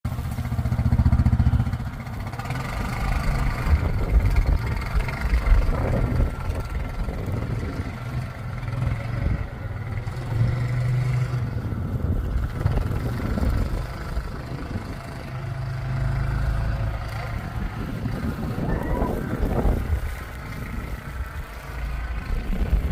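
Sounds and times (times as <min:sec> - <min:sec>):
atv engine revving: 0:00.1 - 0:22.9.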